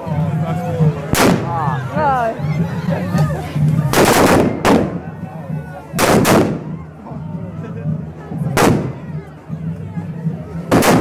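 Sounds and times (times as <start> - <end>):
crowd voices: 0.0 - 11.0
firecrackers banging: 1.1 - 1.6, 3.2 - 6.8, 8.4 - 9.2, 10.6 - 11.0.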